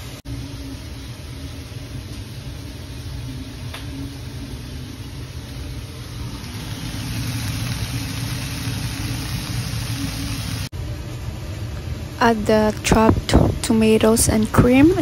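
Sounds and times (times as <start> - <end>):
low hum: 0.0 - 15.0
food sizzling in a frying pan: 0.3 - 10.7.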